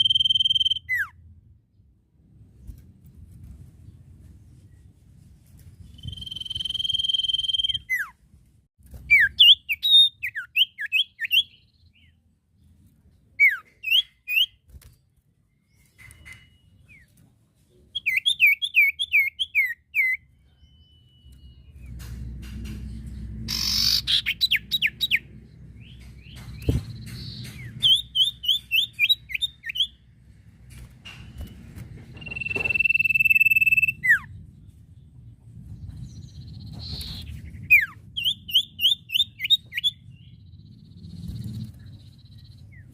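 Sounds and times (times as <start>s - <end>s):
bird singing whistled notes: 0.0s - 1.2s, 5.7s - 8.2s, 9.1s - 12.2s, 13.4s - 14.6s, 17.9s - 22.0s, 23.5s - 30.0s, 32.2s - 34.4s, 35.8s - 42.9s.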